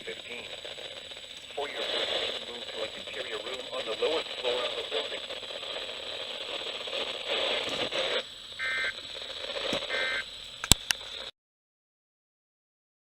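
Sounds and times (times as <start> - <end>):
radio hiss: 0.0 - 11.3
warbling data tones: 0.0 - 11.3
sharp clicks: 9.6 - 11.2.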